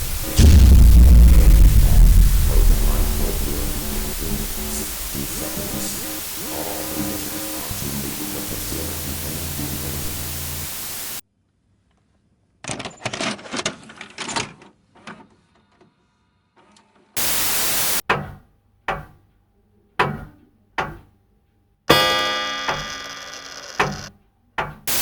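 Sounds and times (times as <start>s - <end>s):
burst of static: 0.0s - 11.2s, 17.2s - 18.0s
explosion and crash effects: 0.0s - 11.2s.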